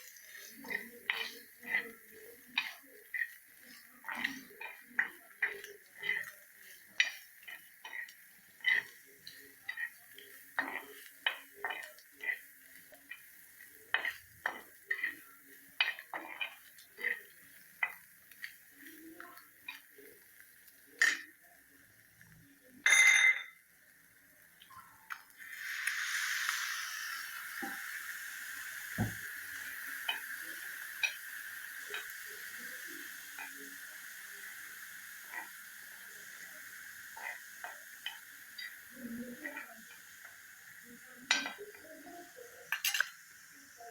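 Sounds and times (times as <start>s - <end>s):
spoon scraping and clinking in metal pan: 0.0s - 13.2s, 13.9s - 17.2s, 22.8s - 23.6s, 41.3s - 41.8s, 42.7s - 43.2s
steady hiss: 0.0s - 22.8s, 23.5s - 43.9s
utensil stirring and scraping in pan: 0.0s - 43.9s.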